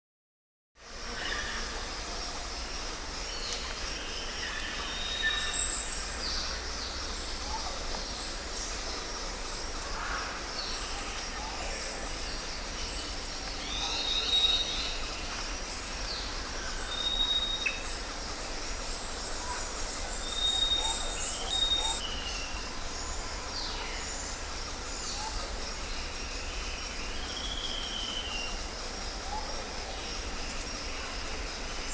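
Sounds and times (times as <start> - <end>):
rainforest background hiss: 0.8 - 31.9
bird calls: 19.3 - 22.5.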